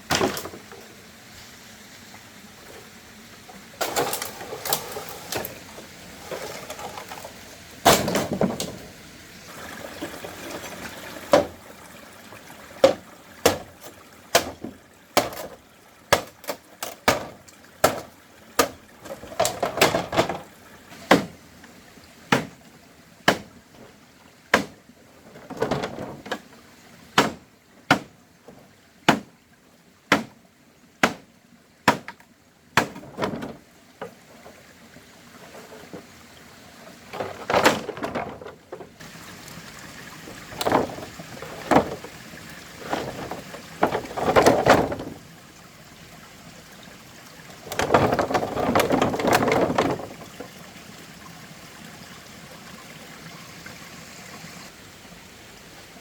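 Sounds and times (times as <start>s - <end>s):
rustling and scraping: 3.5s - 9.0s, 25.2s - 26.5s, 37.0s - 39.1s, 40.3s - 45.2s, 47.6s - 50.6s
sharp knocks or chops: 27.2s - 28.1s.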